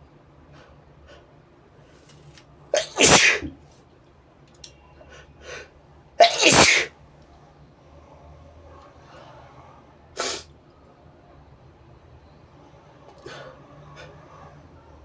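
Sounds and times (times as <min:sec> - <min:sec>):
person sneezing: 0:02.8 - 0:03.5, 0:06.2 - 0:06.9.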